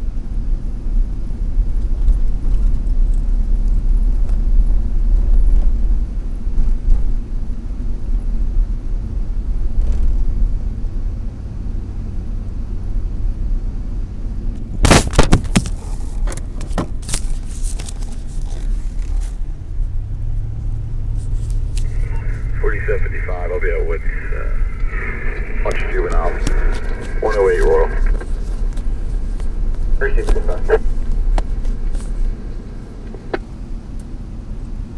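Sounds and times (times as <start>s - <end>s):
car cabin road rumble: 14.9s - 34.9s.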